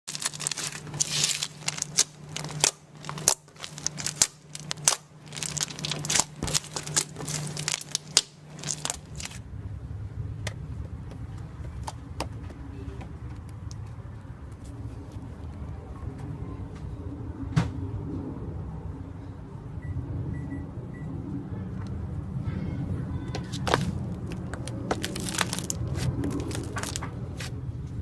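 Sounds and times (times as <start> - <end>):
slime crackling and popping: 0.0 - 9.4, 25.0 - 27.0.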